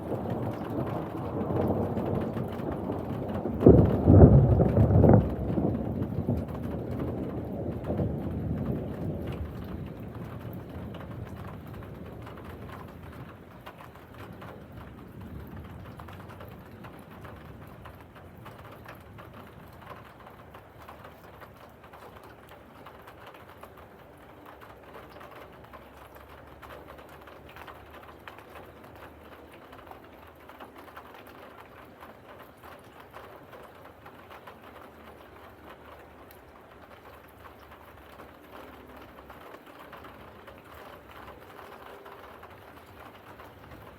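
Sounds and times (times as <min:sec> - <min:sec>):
thunder rumble: 0:00.0 - 0:20.4
rain pattering: 0:00.0 - 0:43.9.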